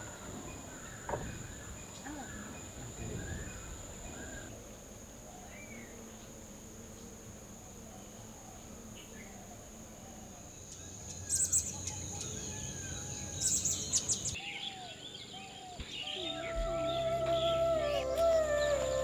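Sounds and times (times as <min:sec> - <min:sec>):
birds chirping: 0:00.0 - 0:04.5, 0:10.7 - 0:19.0
high-pitched insect drone: 0:16.1 - 0:19.0.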